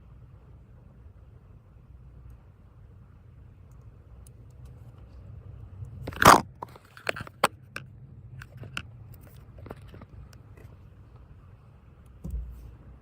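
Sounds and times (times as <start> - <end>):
small clicks and crackles: 3.6 - 11.3.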